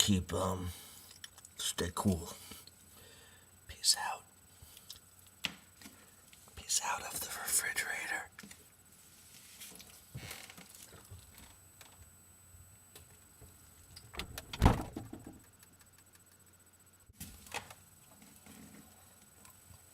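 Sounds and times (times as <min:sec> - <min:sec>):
loud low thump: 0:14.5 - 0:15.3.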